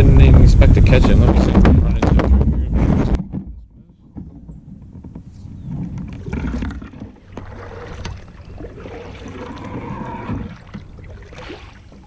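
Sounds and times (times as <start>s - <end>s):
water splashing: 0.0s - 3.4s, 5.8s - 12.0s
knocks against a kayak: 0.8s - 8.2s.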